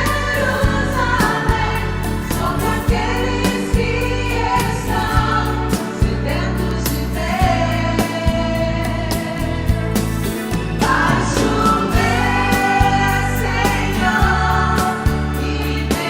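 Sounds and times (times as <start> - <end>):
gospel singing with choir: 0.0 - 16.0
full band playing: 7.3 - 16.0
steady drum beat: 7.4 - 16.0.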